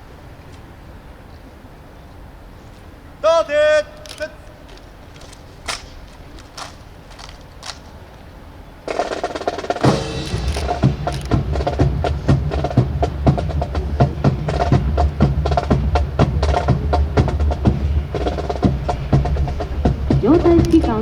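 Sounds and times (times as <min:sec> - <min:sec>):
low drum rumble: 0:08.9 - 0:21.0
marching snare drums: 0:08.9 - 0:21.0.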